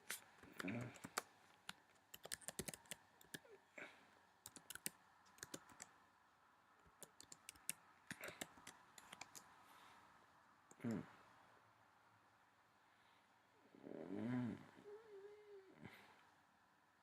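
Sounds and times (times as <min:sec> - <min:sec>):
faint keyboard typing: 0:00.0 - 0:03.6, 0:04.4 - 0:06.0, 0:06.8 - 0:09.5.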